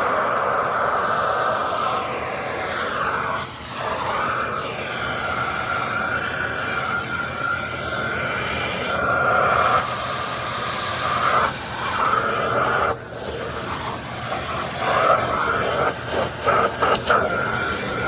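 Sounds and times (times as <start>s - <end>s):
vacuum cleaner running: 0.0s - 18.0s.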